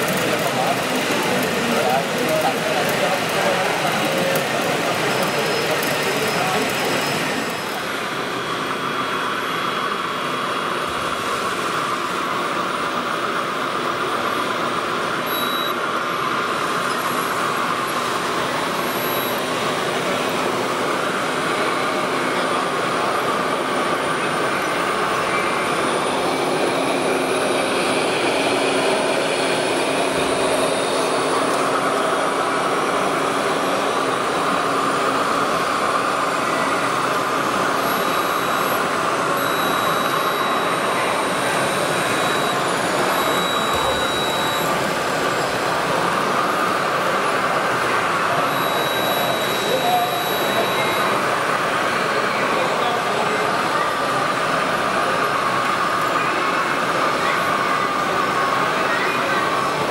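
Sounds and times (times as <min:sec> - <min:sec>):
whir of small motors and gearing: 0:00.0 - 0:10.1, 0:15.2 - 0:15.8, 0:16.6 - 0:20.6, 0:35.3 - 0:45.8, 0:48.5 - 0:51.2.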